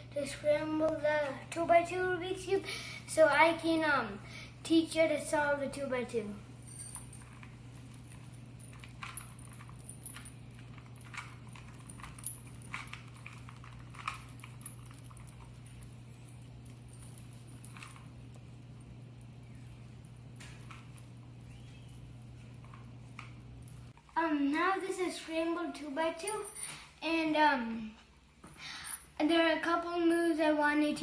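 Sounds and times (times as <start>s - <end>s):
low hum: 6.3s - 24.0s.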